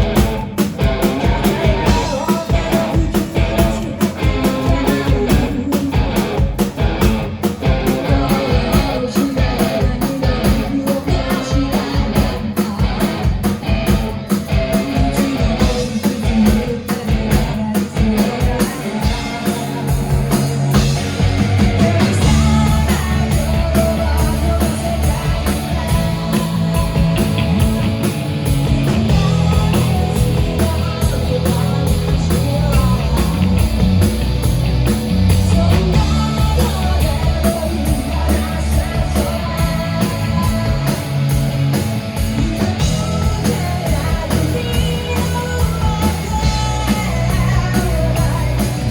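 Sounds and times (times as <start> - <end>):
person singing: 0.0 - 6.8, 7.4 - 34.2, 35.2 - 41.5, 42.2 - 48.9
bass guitar: 0.0 - 48.9
drums: 0.0 - 48.9
electric guitar: 0.0 - 48.9.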